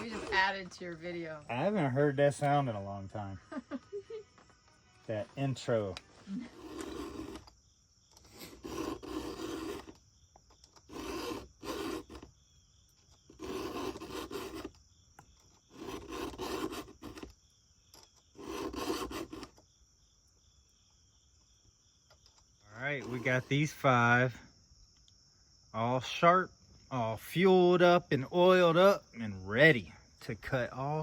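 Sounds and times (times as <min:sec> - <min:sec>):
file rasping on chain: 0:00.0 - 0:00.5, 0:06.4 - 0:07.5, 0:08.3 - 0:10.0, 0:10.8 - 0:12.3, 0:13.3 - 0:14.8, 0:15.7 - 0:17.3, 0:18.3 - 0:19.6, 0:23.0 - 0:23.7.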